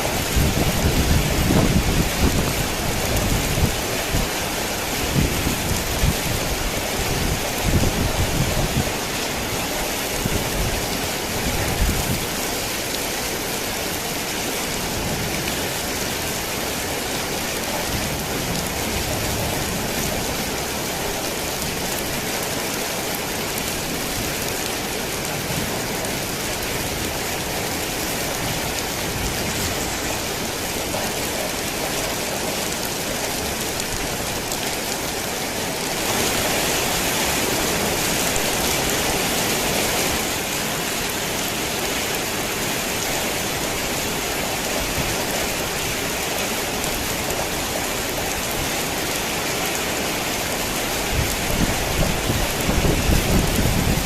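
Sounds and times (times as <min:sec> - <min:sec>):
heavy rain on a tin roof: 0:00.0 - 0:54.0.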